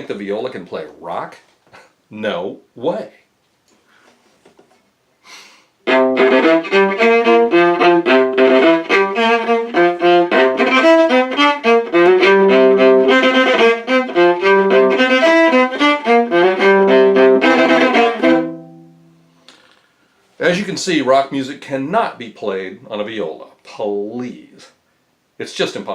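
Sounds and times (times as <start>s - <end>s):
viola bowing a rock riff: 5.8s - 19.4s.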